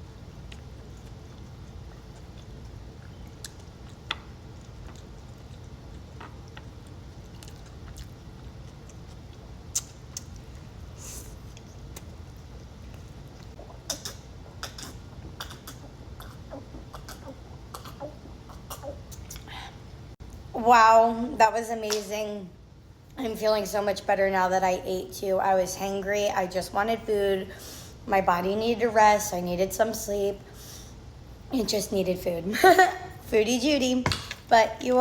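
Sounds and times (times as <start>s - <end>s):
steady low hum: 0.0s - 35.0s
wet mouth clicks and smacks: 8.8s - 10.5s.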